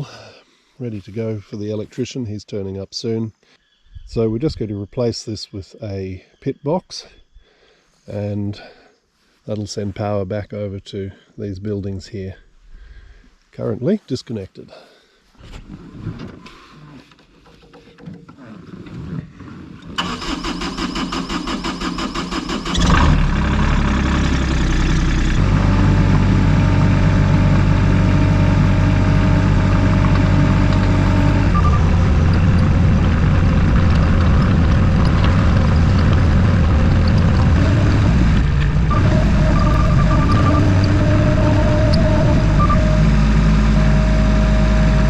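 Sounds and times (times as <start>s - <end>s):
engine cranking: 15.9s - 43.2s
engine running loudly: 22.8s - 45.0s.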